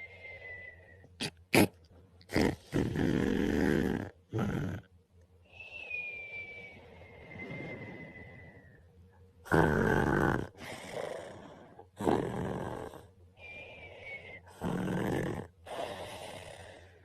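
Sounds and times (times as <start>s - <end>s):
soft breaths: 0.0s - 1.2s, 5.4s - 9.4s, 10.4s - 17.0s
man snoring: 2.3s - 4.9s, 9.4s - 13.1s, 14.5s - 16.9s.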